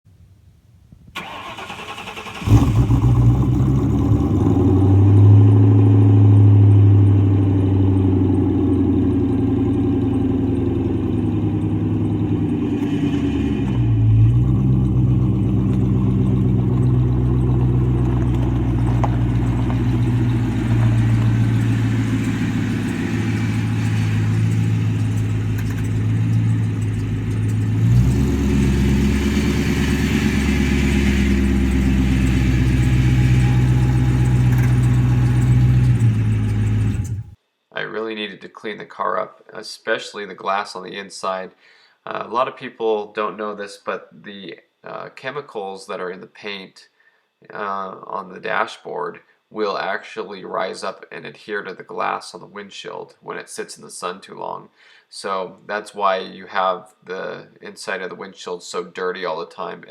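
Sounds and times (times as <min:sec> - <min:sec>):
car engine cranking and idling: 0:01.2 - 0:37.4.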